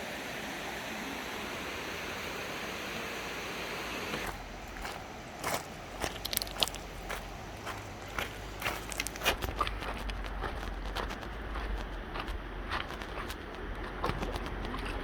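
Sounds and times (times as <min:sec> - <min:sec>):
footsteps: 0:04.2 - 0:15.0.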